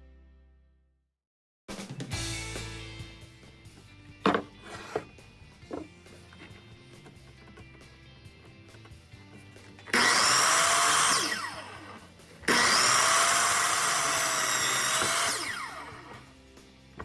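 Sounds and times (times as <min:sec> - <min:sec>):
power tool motor whining: 0:04.3 - 0:05.1, 0:08.8 - 0:16.4.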